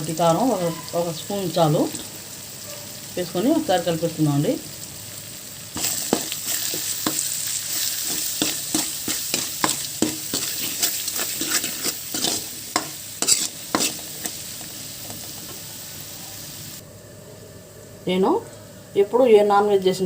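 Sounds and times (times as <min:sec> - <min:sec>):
oil sizzling: 0:00.0 - 0:16.9
spoon scraping a pan: 0:05.8 - 0:15.6.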